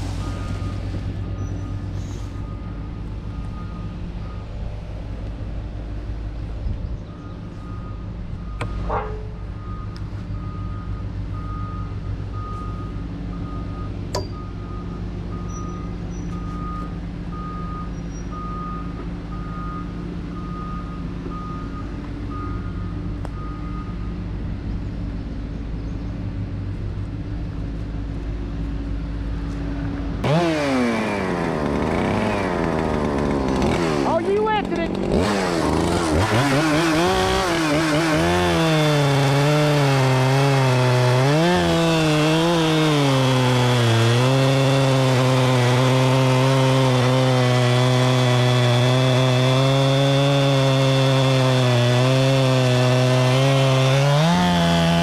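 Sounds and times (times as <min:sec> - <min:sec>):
excavator diesel engine running: 0:00.0 - 0:46.9
chainsaw revving: 0:30.2 - 0:55.0.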